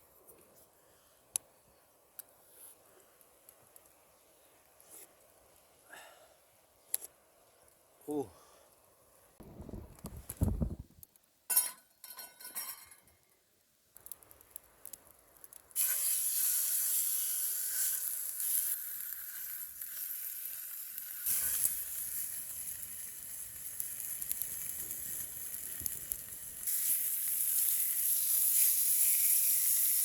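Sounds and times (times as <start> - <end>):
metal clinks and clatters: 11.5 - 13.2
food sizzling in hot pan: 15.7 - 30.0.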